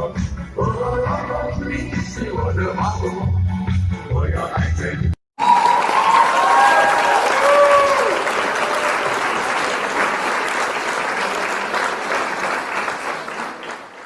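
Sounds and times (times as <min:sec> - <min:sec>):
audience applauding: 0:05.4 - 0:14.0.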